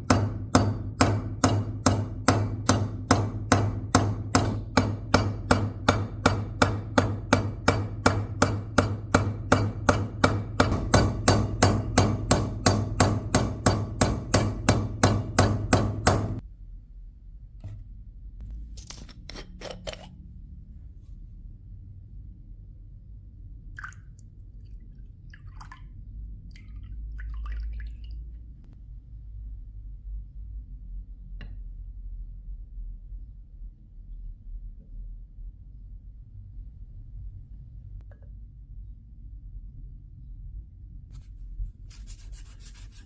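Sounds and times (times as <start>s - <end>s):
steady low hum: 8.8s - 27.6s.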